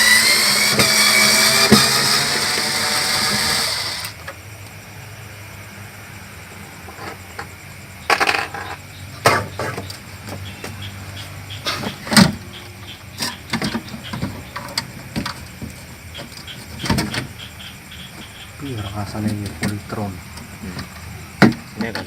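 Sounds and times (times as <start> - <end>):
refrigerator parts knocking and clattering: 11.8 - 17.4, 20.7 - 22.0.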